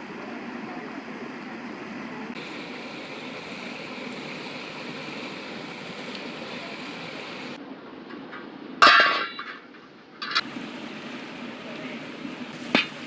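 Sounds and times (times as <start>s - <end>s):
flowing river water: 0.0s - 7.6s.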